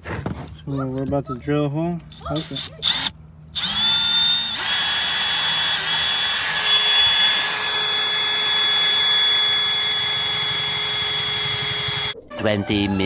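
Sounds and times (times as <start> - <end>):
power drill whining: 2.1 - 12.2.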